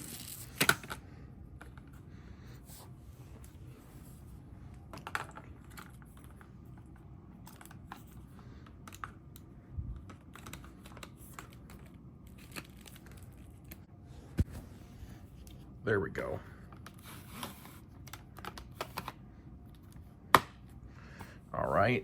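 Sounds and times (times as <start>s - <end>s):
plastic parts clicking and rattling: 4.9s - 13.8s.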